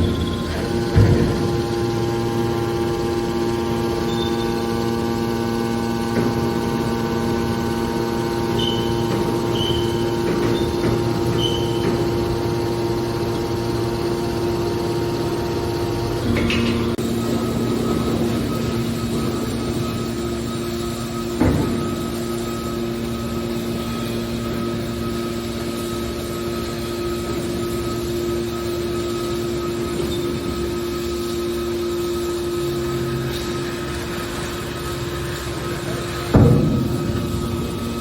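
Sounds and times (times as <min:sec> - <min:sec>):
machine knock: 0:00.0 - 0:02.6, 0:08.2 - 0:13.8, 0:34.4 - 0:38.0
baler machine hum: 0:00.0 - 0:38.0.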